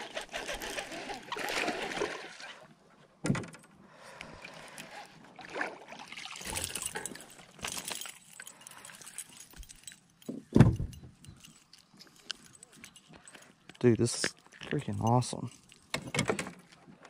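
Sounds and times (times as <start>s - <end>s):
water splashing and trickling: 0.6s - 2.8s, 4.1s - 10.2s.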